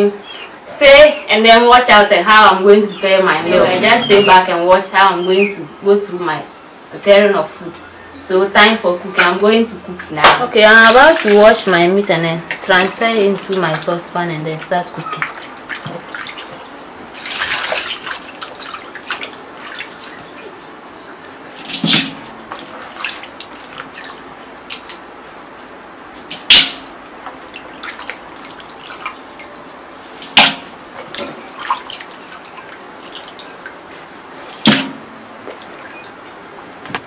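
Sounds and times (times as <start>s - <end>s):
water sloshing and dripping: 10.4s - 25.1s, 26.2s - 37.0s
water splashes: 10.4s - 25.1s, 26.3s - 36.5s.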